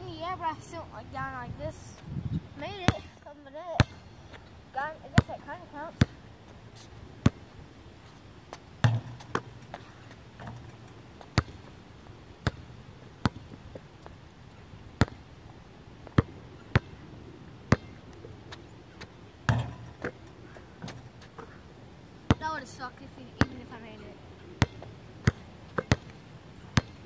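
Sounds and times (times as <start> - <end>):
basketball bouncing on court: 2.8 - 3.1, 3.8 - 4.1, 5.0 - 6.2, 8.8 - 9.8, 10.4 - 11.7, 12.4 - 13.6, 16.1 - 17.0, 17.7 - 18.0, 19.5 - 20.2, 23.4 - 23.8, 24.6 - 27.0.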